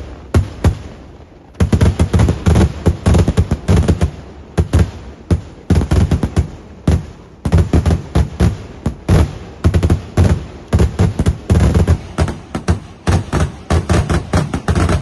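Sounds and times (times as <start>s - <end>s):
fireworks bangs: 0.0s - 15.0s.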